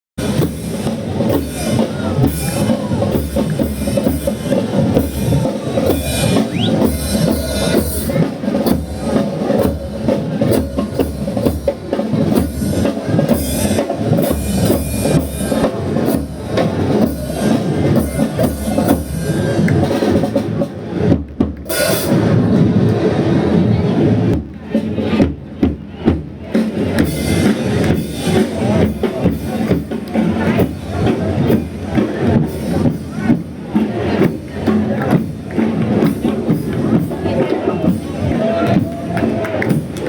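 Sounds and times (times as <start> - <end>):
bass drum beat: 0.2 - 20.0
parade drum music: 0.2 - 40.0.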